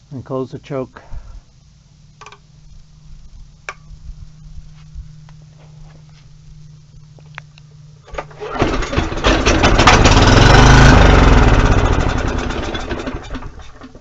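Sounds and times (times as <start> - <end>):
generator engine running: 5.4 - 14.0
generator pull-start: 8.0 - 14.0.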